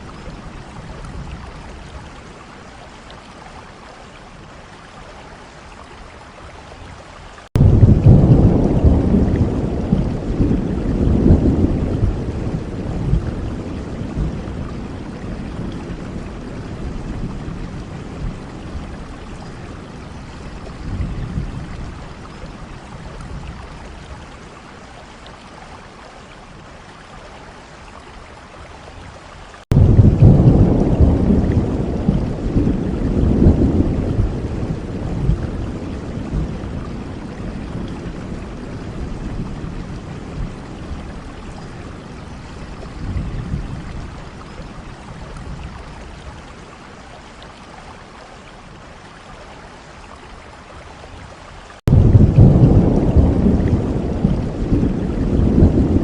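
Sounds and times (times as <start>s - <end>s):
steady rain: 0.0s - 56.0s
loud thunder rumble: 7.6s - 16.4s, 29.7s - 41.0s, 51.9s - 56.0s
low rolling thunder: 7.6s - 23.6s, 29.7s - 45.6s, 51.9s - 56.0s.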